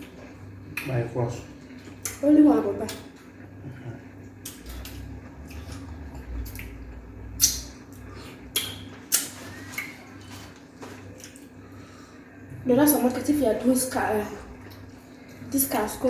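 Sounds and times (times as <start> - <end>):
wet squishing eating sounds: 0.0 - 12.6, 13.9 - 15.9
wet mouth smacks: 4.4 - 6.8, 7.4 - 10.0.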